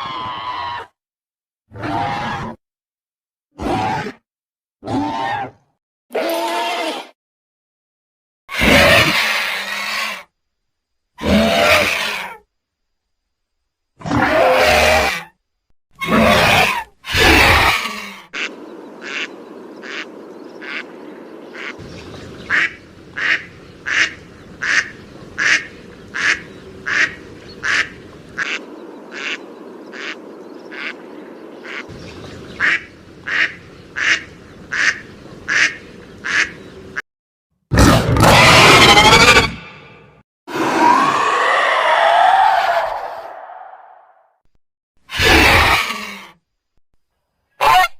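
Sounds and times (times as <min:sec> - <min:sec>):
loud noisy creature calls: 0:08.5 - 0:10.3, 0:11.2 - 0:12.4, 0:14.0 - 0:15.3, 0:16.0 - 0:19.3, 0:37.7 - 0:44.2, 0:45.1 - 0:46.3.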